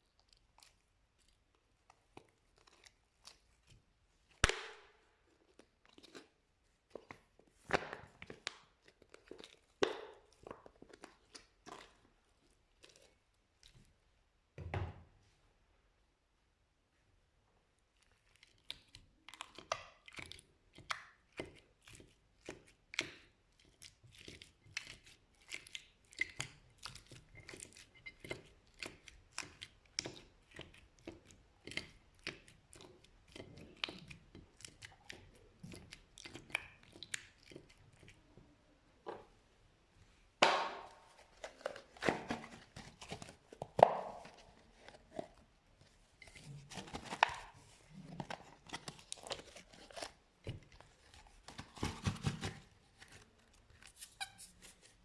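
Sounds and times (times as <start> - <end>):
slime crackling pops: 4.4 - 4.9.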